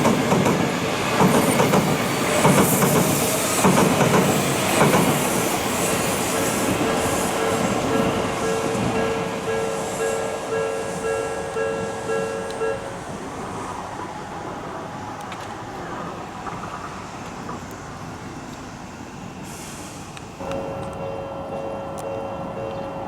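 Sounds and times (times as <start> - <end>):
train passing: 0.0 - 23.0
level crossing warning bell: 6.3 - 13.1, 20.4 - 23.0.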